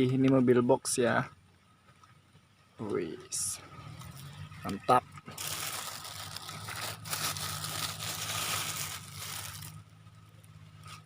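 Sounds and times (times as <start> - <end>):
leaves and twigs rustling: 4.0 - 11.0.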